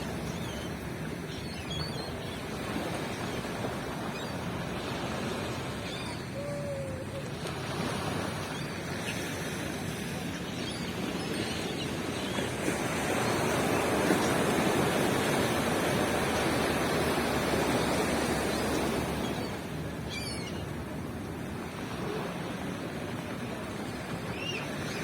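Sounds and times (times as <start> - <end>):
ocean wave breaking on beach: 0.0 - 6.4, 7.0 - 20.0.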